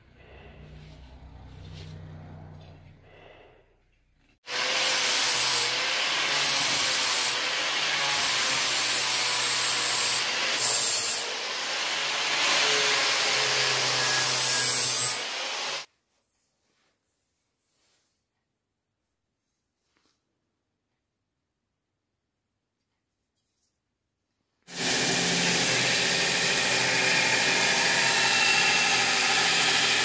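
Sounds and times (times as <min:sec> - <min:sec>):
power sander rasping: 0:24.7 - 0:30.0.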